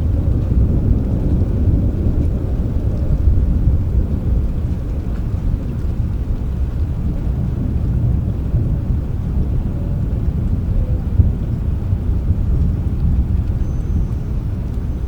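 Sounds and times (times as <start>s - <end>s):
rumble of thunder: 0.0s - 15.0s
steady rain: 0.0s - 15.0s.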